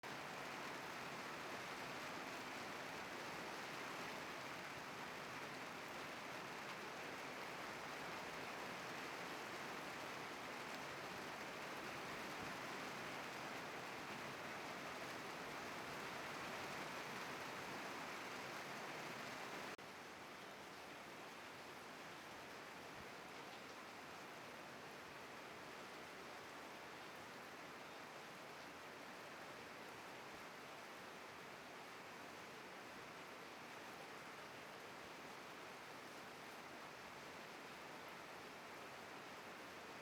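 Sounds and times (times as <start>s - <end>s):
heavy rain falling: 0.1s - 19.8s.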